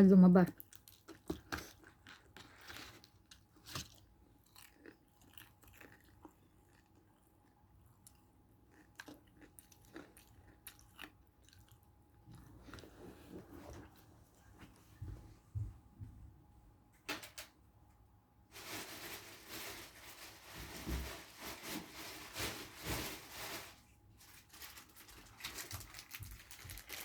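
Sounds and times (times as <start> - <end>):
person chewing with crunches: 0.5 - 14.1, 25.2 - 27.0.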